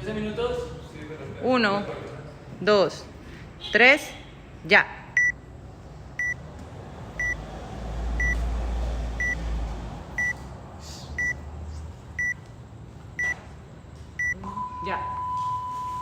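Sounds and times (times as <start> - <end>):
electronic timer beeping: 5.2 - 5.4, 6.2 - 6.4, 7.2 - 7.4, 8.2 - 8.4, 9.2 - 9.4, 10.2 - 10.4, 12.2 - 12.4, 14.2 - 16.0.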